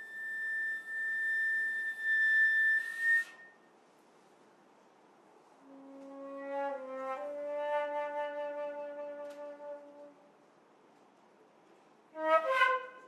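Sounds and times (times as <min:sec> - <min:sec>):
solo flute: 0:00.0 - 0:03.7, 0:05.6 - 0:10.3, 0:12.1 - 0:13.0.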